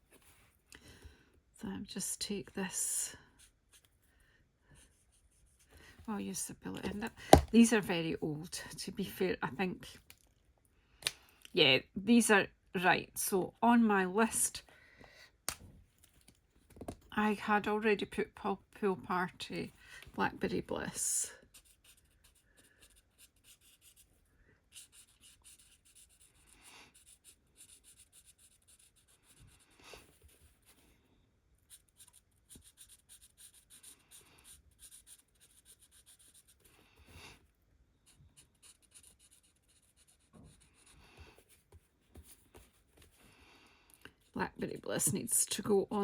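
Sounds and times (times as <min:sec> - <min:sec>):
pen scratching on paper: 0:21.5 - 0:24.0, 0:24.7 - 0:30.4, 0:31.7 - 0:36.7, 0:38.0 - 0:43.1.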